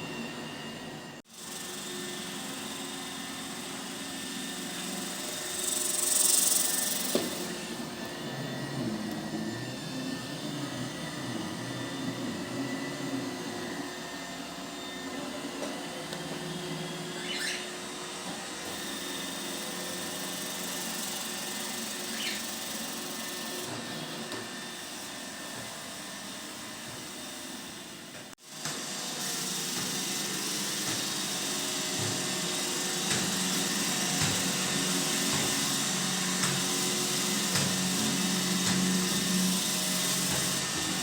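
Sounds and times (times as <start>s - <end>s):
robot vacuum whirring hum: 0.0s - 41.0s.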